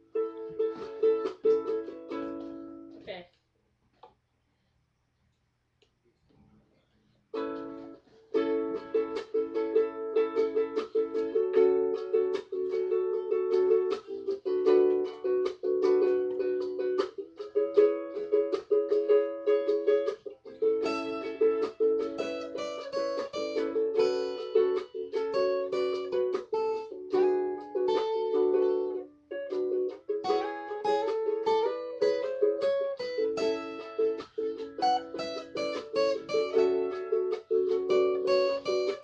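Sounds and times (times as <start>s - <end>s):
strummed string instrument chords: 7.4s - 39.0s.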